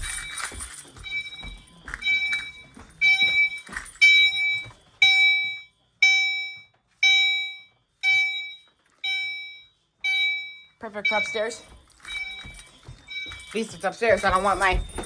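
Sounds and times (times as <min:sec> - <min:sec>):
knocking and handling noise: 0:00.0 - 0:04.9
fire alarm chime tone: 0:00.0 - 0:15.0.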